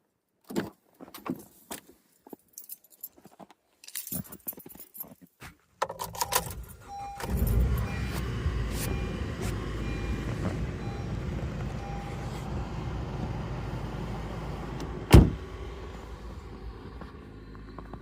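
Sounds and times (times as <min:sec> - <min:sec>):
keys jangling: 0:02.5 - 0:05.2, 0:05.9 - 0:07.6
car engine and road rumble: 0:05.7 - 0:18.0.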